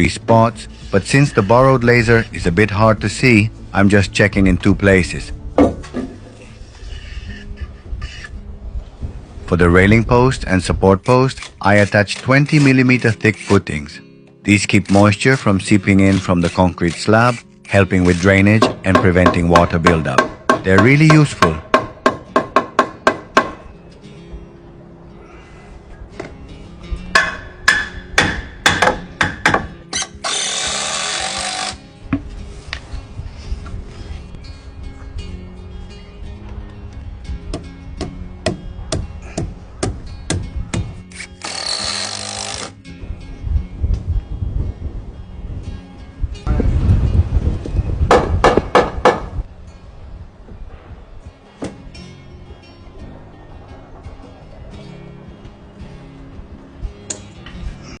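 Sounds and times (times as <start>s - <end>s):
quiet background music: 0.0s - 58.0s
hammer striking wood: 5.6s - 6.2s, 18.6s - 23.6s, 27.1s - 29.8s, 37.5s - 41.0s, 48.1s - 49.4s.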